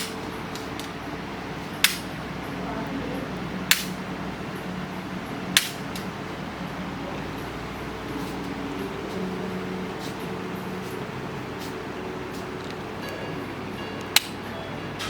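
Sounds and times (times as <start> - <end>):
adjusting instrument sharp clicks: 1.8 - 2.1, 3.7 - 4.0.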